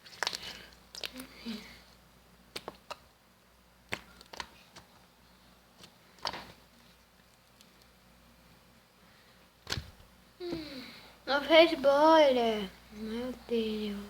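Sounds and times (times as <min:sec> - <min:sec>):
slime clicking and popping: 0:02.5 - 0:03.1, 0:03.9 - 0:04.6.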